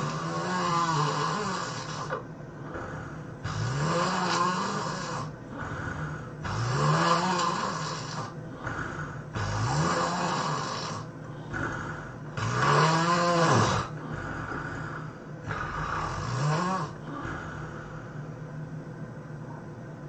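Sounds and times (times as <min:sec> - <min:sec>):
person snoring heavily: 0:00.0 - 0:18.2
weak breath: 0:01.4 - 0:03.7, 0:04.6 - 0:06.6, 0:07.7 - 0:12.7, 0:13.4 - 0:18.4.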